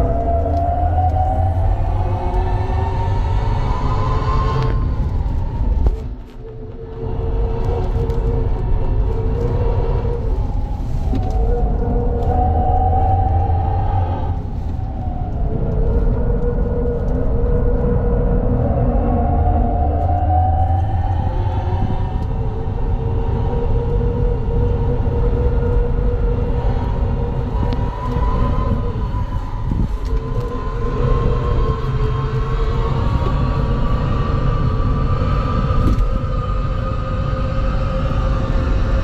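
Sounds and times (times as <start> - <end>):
loud low road rumble: 0.0 - 39.0.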